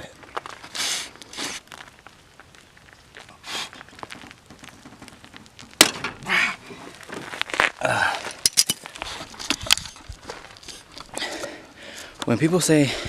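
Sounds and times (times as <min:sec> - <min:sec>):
person exhaling hard: 0:07.8 - 0:08.4
tools scraping and ticking: 0:08.3 - 0:12.4.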